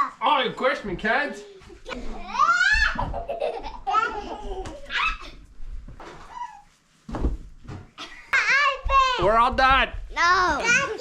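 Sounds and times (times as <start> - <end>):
girls laughing: 2.3 - 5.4.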